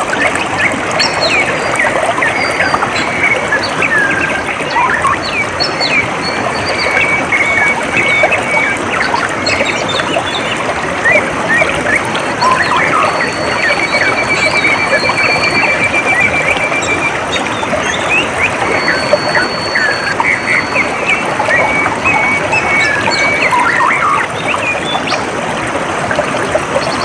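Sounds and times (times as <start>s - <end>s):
water flowing: 0.0s - 27.0s
small birds chirping: 0.4s - 25.3s.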